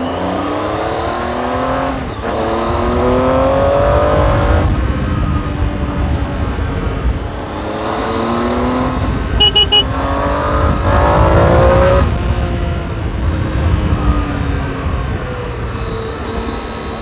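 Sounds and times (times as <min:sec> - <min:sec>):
motorcycle engine accelerating: 0:00.6 - 0:17.0
short high beeps: 0:09.4 - 0:09.9.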